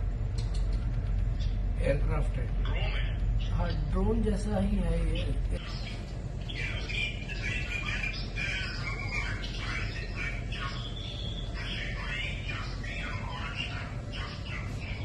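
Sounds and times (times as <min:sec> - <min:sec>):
low rumble: 0:00.0 - 0:15.0
birds squawking and chirping: 0:05.2 - 0:15.0.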